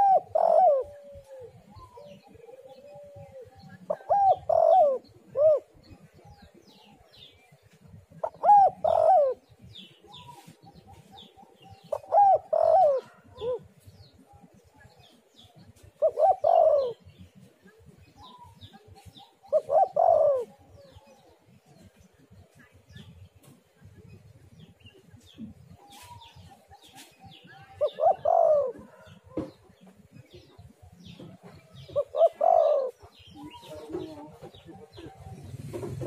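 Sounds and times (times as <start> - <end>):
dove cooing: 0.0 - 7.1, 8.0 - 13.8, 16.0 - 17.4, 18.2 - 21.8, 25.3 - 29.5, 31.3 - 36.0
small birds chirping: 0.0 - 36.0.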